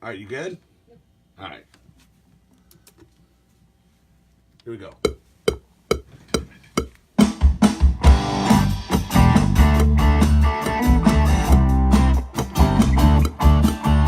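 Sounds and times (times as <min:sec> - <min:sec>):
drums: 0:05.1 - 0:14.0
bass guitar: 0:07.5 - 0:14.0
electric guitar: 0:08.0 - 0:14.0.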